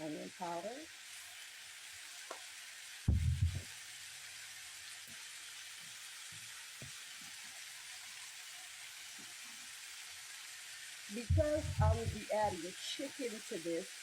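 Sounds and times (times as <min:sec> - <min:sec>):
vegetables sizzling in a frying pan: 0:00.0 - 0:14.0
short dull thump: 0:03.1 - 0:03.6.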